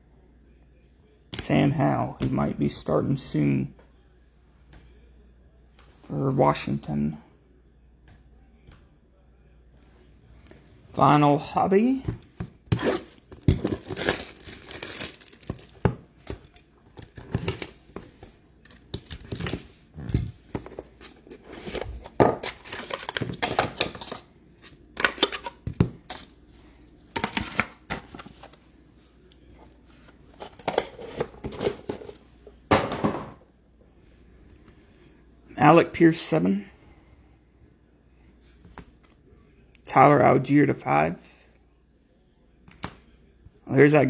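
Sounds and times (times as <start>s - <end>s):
plastic wrapping being torn: 13.4s - 15.7s.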